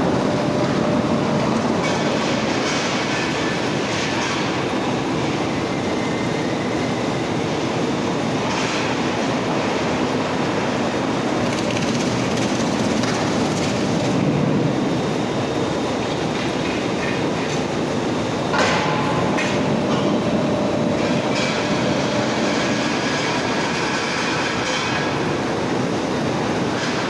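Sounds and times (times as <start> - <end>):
industrial machinery rattling: 11.2 - 15.0.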